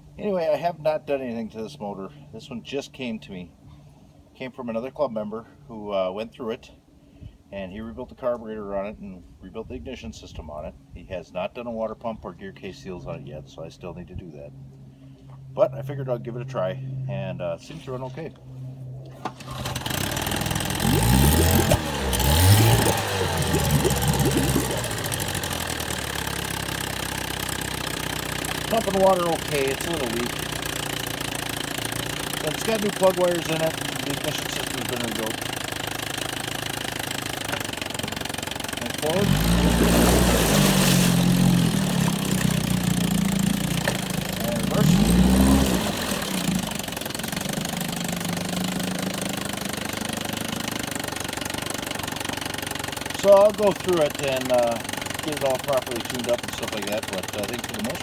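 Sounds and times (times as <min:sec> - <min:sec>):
outboard motor revving and idling: 0:19.2 - 0:58.0.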